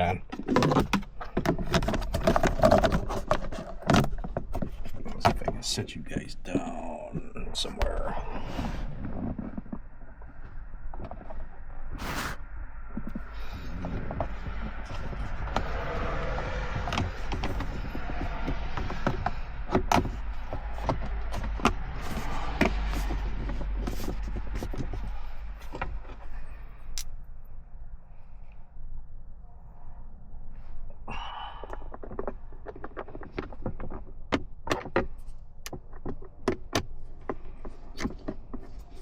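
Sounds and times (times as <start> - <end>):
plastic parts clicking and knocking: 0.0 - 5.6, 16.7 - 27.1, 31.7 - 39.0
steady low rumble: 5.0 - 32.5.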